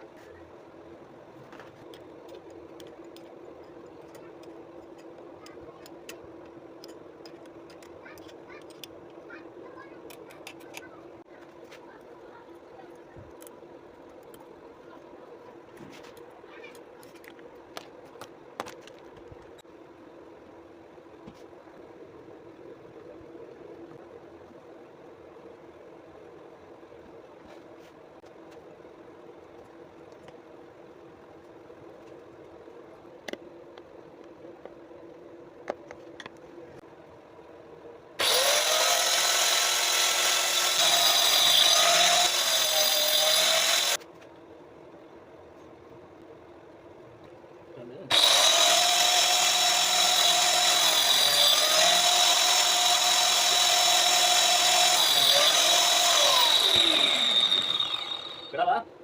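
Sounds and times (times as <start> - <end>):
low steady hum: 0.0 - 38.2
angle grinder cutting wood: 38.2 - 44.0, 48.1 - 58.6.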